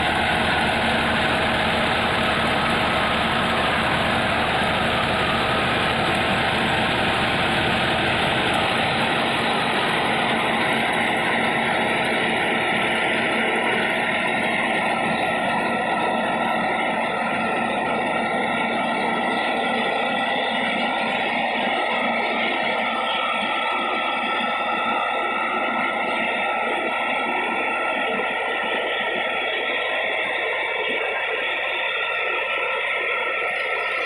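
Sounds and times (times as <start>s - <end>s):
tractor diesel engine running: 0.0s - 34.0s.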